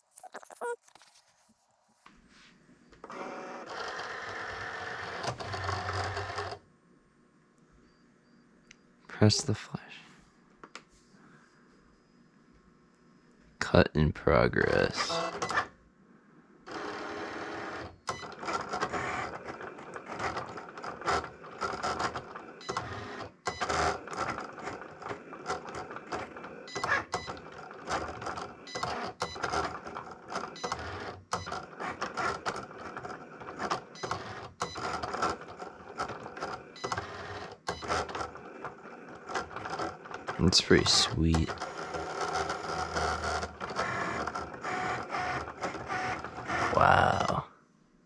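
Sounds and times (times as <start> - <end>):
cutting machine motors whirring: 14.8 - 15.7, 16.7 - 46.8.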